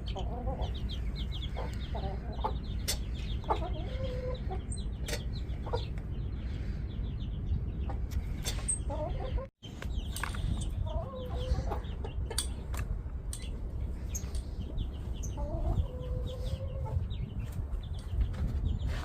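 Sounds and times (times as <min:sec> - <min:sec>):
chickens clucking: 0:00.0 - 0:19.0
small birds chirping: 0:00.0 - 0:19.0
steady low rumble: 0:00.0 - 0:19.0
wavering hen calls: 0:03.4 - 0:04.7.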